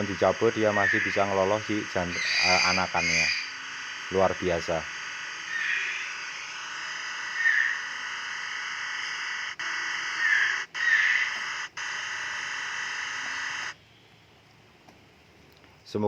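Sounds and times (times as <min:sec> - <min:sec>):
steady high-pitched hiss: 0:00.0 - 0:08.3, 0:10.8 - 0:16.0
short bird calls: 0:00.6 - 0:03.6, 0:05.4 - 0:06.2, 0:10.2 - 0:11.4.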